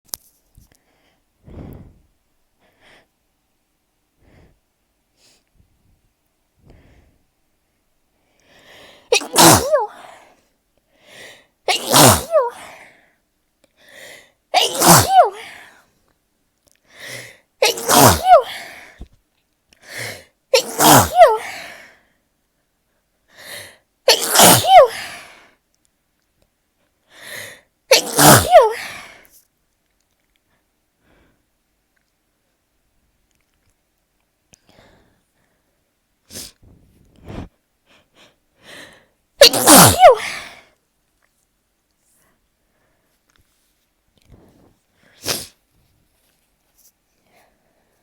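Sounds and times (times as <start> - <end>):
catching in-breath: 0.8 - 2.1
person sneezing: 9.1 - 10.3, 11.7 - 12.8, 14.6 - 15.7, 17.6 - 19.0, 19.9 - 21.8, 24.1 - 25.4, 27.2 - 29.2, 39.4 - 40.6, 45.1 - 45.6.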